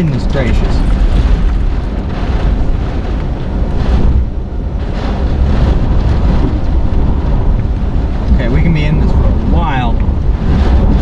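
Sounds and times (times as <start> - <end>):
hurricane wind rushing: 0.0 - 11.0
wind noise on microphone: 0.0 - 11.0.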